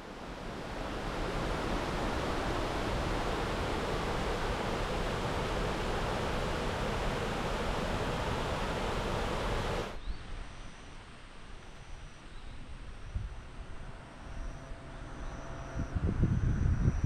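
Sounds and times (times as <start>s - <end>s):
rushing water: 0.0s - 10.0s.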